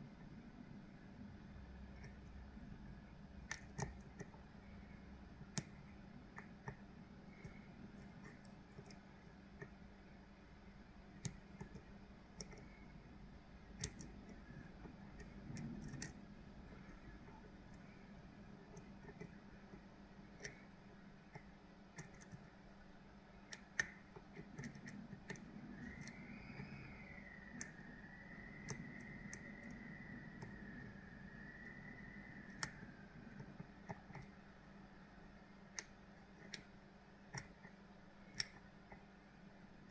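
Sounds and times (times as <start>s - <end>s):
low steady hum: 0.0s - 39.9s
faint wavering high tone: 25.6s - 33.3s.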